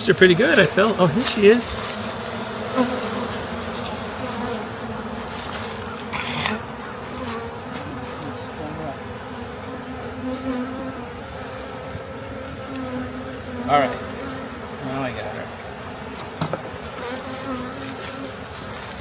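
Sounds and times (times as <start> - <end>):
honey bees buzzing: 0.0 - 19.0
rustling noise: 0.5 - 2.4, 5.2 - 7.9, 17.6 - 19.0.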